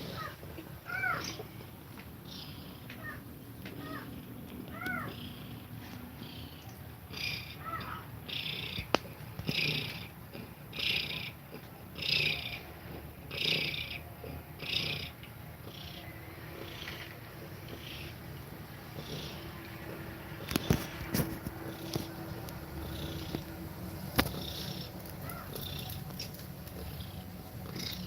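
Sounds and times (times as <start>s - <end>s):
cat breathing heavily: 0.0s - 3.2s, 5.0s - 23.6s, 24.2s - 26.0s
cat purring: 0.0s - 28.0s
kitten mewing: 3.8s - 5.5s.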